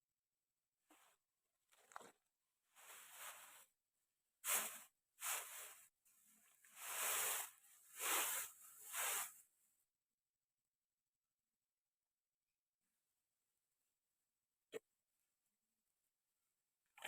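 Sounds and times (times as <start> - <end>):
short swishing rustling noises: 4.5 - 5.9, 6.7 - 9.4.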